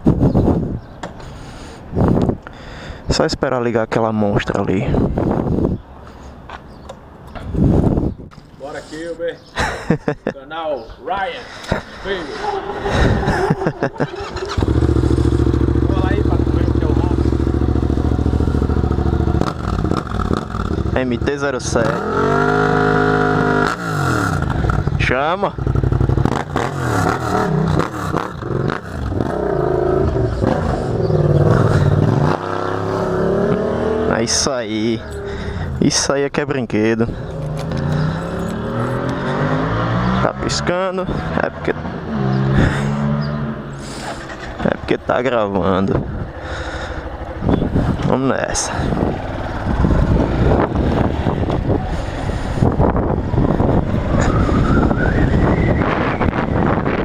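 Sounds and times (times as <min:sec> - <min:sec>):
wind buffeting microphone: 0:00.0 - 0:02.5, 0:04.8 - 0:08.8, 0:11.6 - 0:21.0, 0:45.7 - 0:57.0
motorcycle engine revving: 0:12.4 - 0:35.8, 0:37.1 - 0:45.0, 0:45.7 - 0:57.0.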